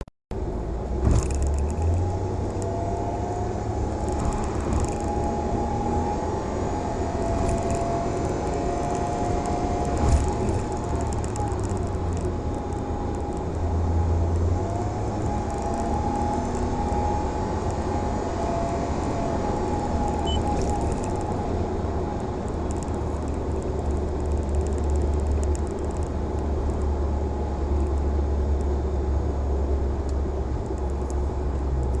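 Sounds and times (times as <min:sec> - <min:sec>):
abnormal engine noise: 0:00.3 - 0:32.0
car accelerating: 0:00.9 - 0:25.4.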